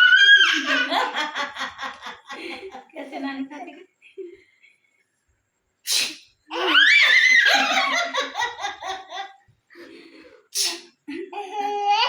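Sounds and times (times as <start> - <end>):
person sneezing: 5.9 - 6.2, 10.6 - 10.9
baby laughing and giggling: 11.4 - 12.0.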